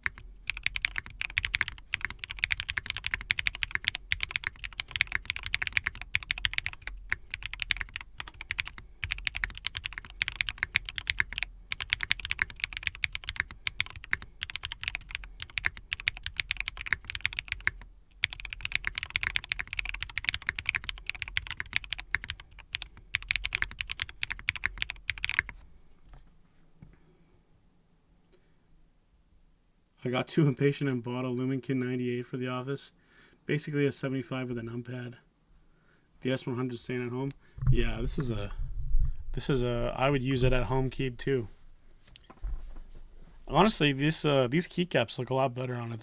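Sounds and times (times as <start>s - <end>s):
mechanical keyboard typing: 0.0s - 25.6s.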